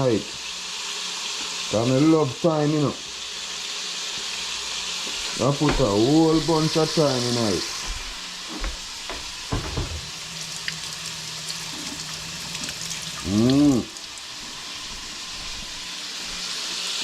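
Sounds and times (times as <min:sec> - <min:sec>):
chicken wings sizzling in oil: 0:00.0 - 0:17.0
soft knocks: 0:05.6 - 0:06.5, 0:07.8 - 0:10.2
short voiced hum: 0:13.2 - 0:14.0.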